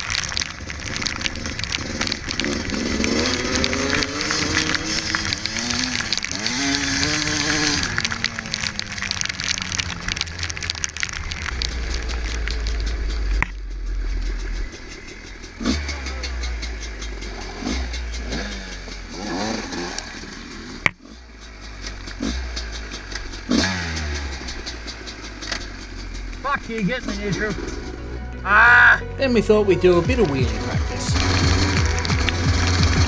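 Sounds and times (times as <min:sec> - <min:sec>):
dirt bike engine with throttle blips: 0:00.9 - 0:10.1, 0:12.0 - 0:28.0.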